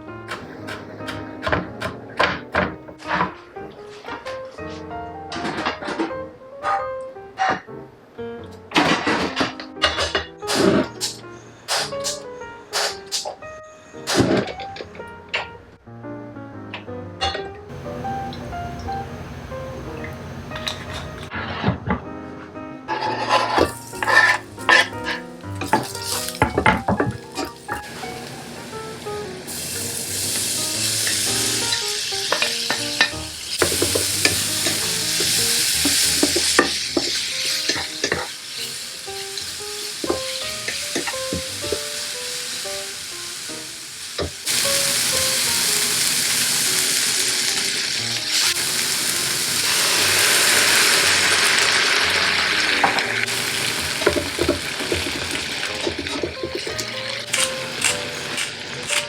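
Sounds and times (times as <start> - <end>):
food sizzling in a frying pan: 23.2 - 59.0
utensil clicking and scraping: 56.8 - 59.0.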